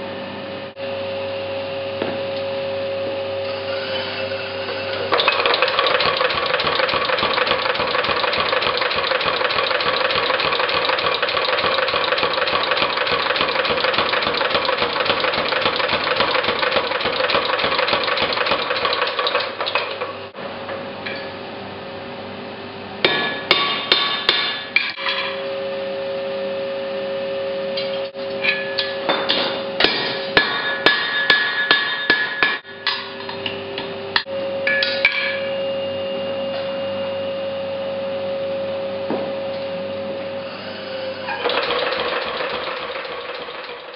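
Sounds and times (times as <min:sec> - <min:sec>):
steady mechanical hum: 0:00.0 - 0:43.9
power hammer pounding iron: 0:05.1 - 0:19.9, 0:23.0 - 0:24.7, 0:29.1 - 0:33.0
ringing hammer blows on metal: 0:28.4 - 0:33.1, 0:34.2 - 0:35.7.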